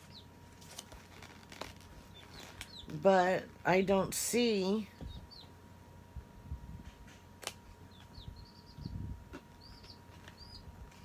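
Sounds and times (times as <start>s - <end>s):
small bird chirping: 0.0s - 0.4s, 1.1s - 3.4s, 4.6s - 5.6s, 7.8s - 11.0s
soft handling noises: 0.5s - 2.7s.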